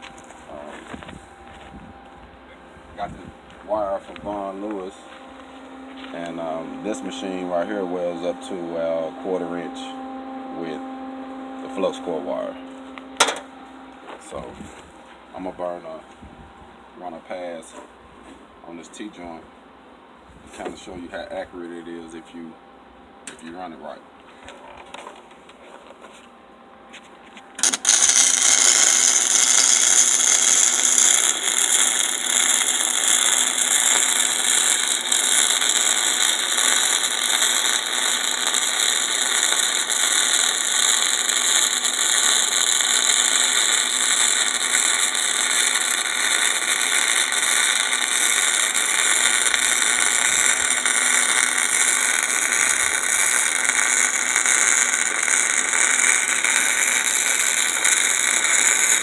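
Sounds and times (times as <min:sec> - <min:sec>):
welding arc crackling hiss: 0:00.0 - 0:10.8, 0:11.6 - 0:16.0, 0:27.6 - 0:59.0.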